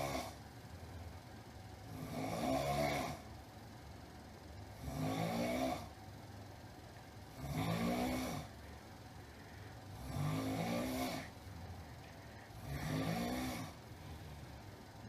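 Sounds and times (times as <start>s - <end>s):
person snoring loudly: 0.0s - 0.4s, 1.9s - 3.2s, 4.8s - 5.9s, 7.3s - 8.5s, 9.9s - 11.4s, 12.5s - 13.8s
quiet breathing: 8.4s - 15.0s.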